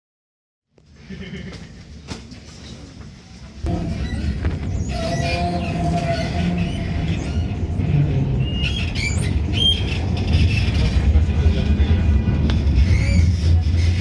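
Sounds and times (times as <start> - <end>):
tram rumbling on rails: 1.4 - 14.0
high wheel squeals: 3.7 - 10.9
tram motor whine: 3.7 - 13.0.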